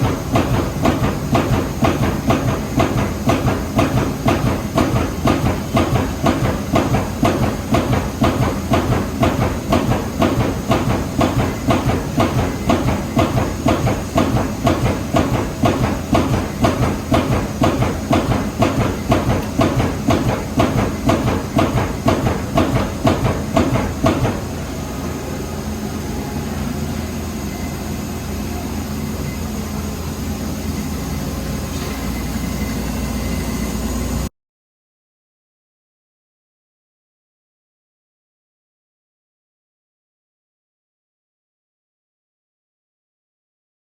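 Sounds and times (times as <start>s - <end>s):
punch press punching sheet metal: 0.0s - 24.7s
machine running steadily: 0.0s - 34.3s.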